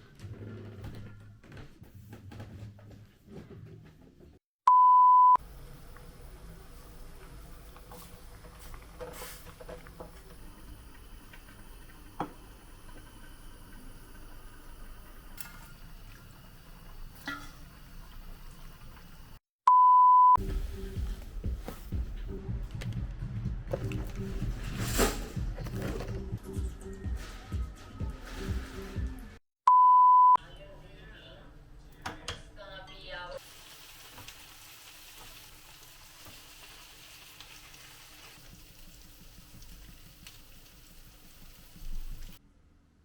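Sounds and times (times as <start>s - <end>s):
electronic beep: 19.7s - 20.4s, 29.7s - 30.4s.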